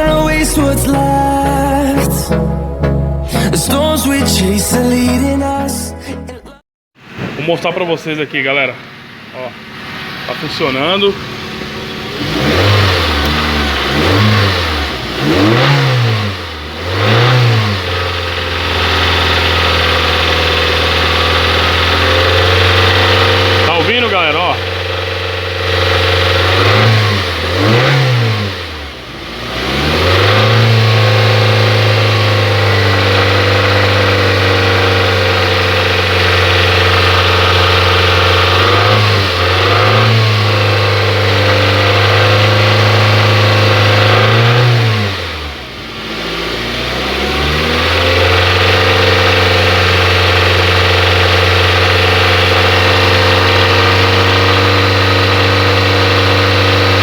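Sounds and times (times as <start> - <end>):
knocking car engine idling: 8.8 - 12.2.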